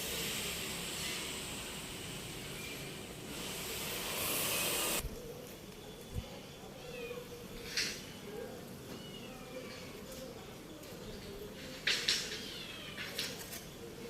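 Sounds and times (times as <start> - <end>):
loud hiss: 0.0 - 5.0.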